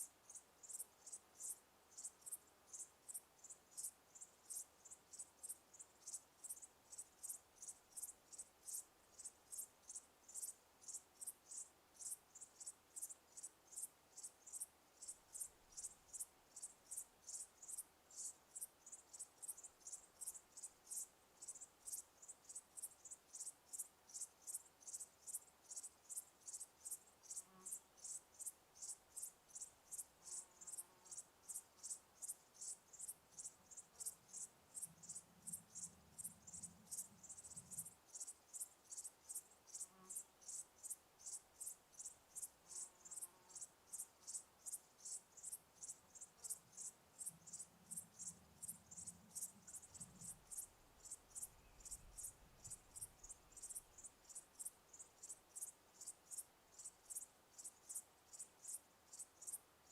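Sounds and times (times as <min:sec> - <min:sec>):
crickets chirping: 0:00.0 - 0:59.9
faint low hum: 0:32.5 - 0:40.2, 0:45.4 - 0:55.5.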